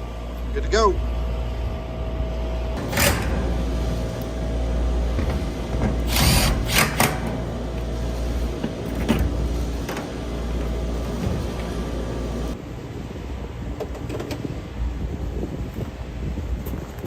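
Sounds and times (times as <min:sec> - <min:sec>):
steady low rumble: 0:00.0 - 0:17.0
short noisy tool bursts: 0:06.1 - 0:07.3.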